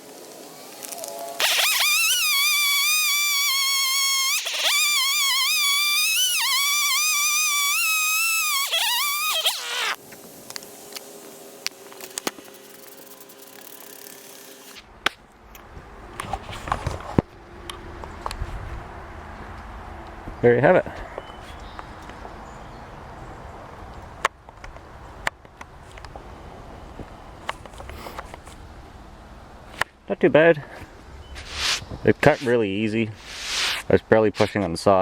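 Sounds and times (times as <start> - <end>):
chainsaw cutting log: 1.4 - 10.0.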